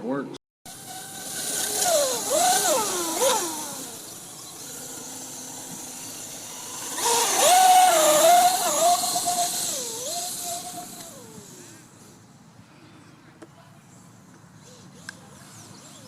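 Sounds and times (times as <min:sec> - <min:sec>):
electric motor whining: 0:00.7 - 0:12.2.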